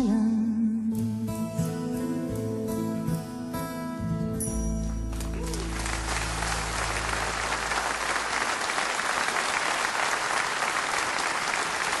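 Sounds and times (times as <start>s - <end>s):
audience applauding: 5.1s - 12.0s.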